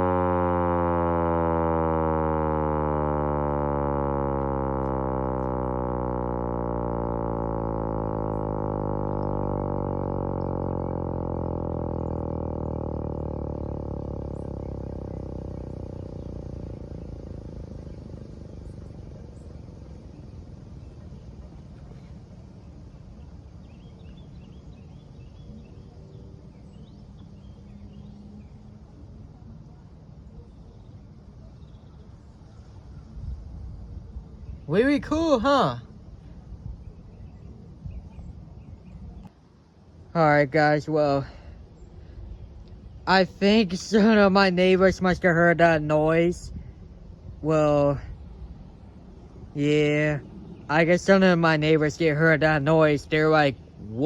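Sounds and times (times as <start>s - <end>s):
hand-crank siren winding down: 0.0s - 19.8s
steady low rumble: 0.0s - 54.0s
faint bird chirps: 2.5s - 54.0s.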